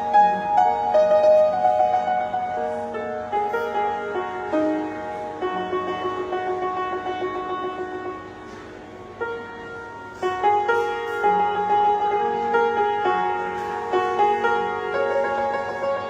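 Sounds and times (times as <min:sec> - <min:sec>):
solo piano melody: 0:00.0 - 0:16.0.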